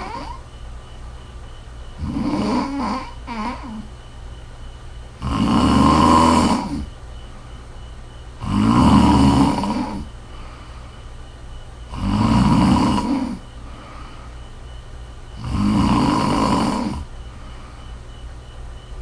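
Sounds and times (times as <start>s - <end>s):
woman snoring: 0.0s - 0.5s, 2.0s - 4.0s, 5.2s - 6.9s, 8.4s - 10.2s, 11.9s - 13.5s, 15.4s - 17.1s.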